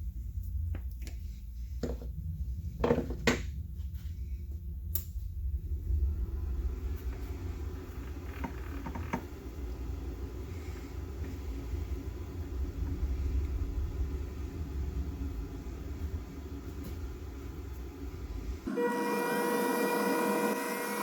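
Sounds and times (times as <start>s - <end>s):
metal lathe running: 17.2s - 21.0s.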